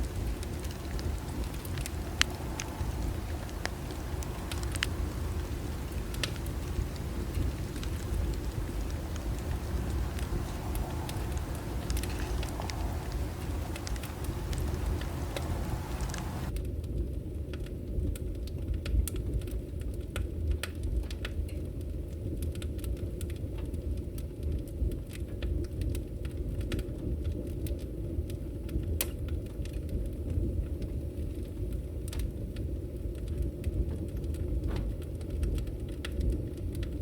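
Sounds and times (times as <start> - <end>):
steady low rumble: 0.0 - 16.5
bonfire crackling: 0.0 - 16.6.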